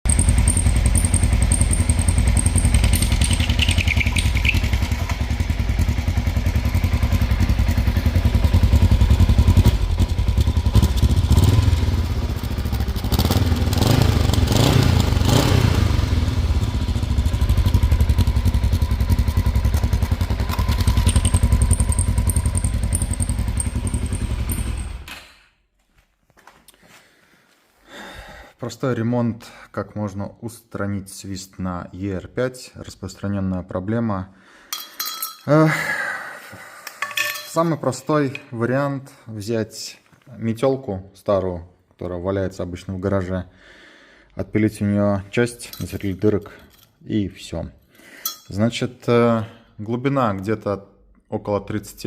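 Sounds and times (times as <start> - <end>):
motorcycle engine running: 0.1 - 25.1
muffler whistling: 3.0 - 5.0.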